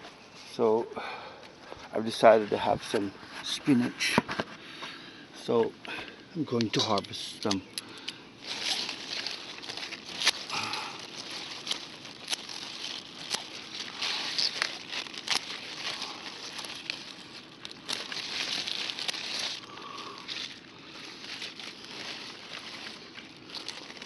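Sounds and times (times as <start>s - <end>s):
leaves rustling: 1.6s - 24.0s
stems snapping: 5.5s - 24.0s.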